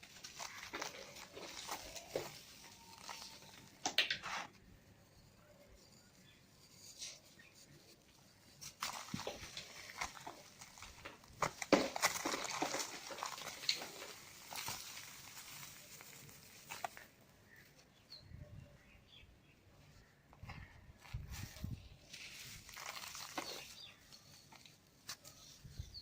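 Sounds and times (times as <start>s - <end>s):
cement crumbling and crunching: 0.0s - 4.4s, 8.4s - 17.2s, 21.1s - 25.4s.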